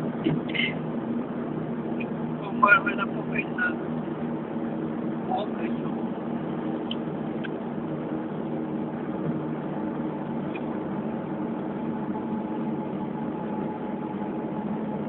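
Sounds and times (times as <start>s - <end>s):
road noise: 0.0s - 15.0s
vehicle engine drone: 0.0s - 15.0s.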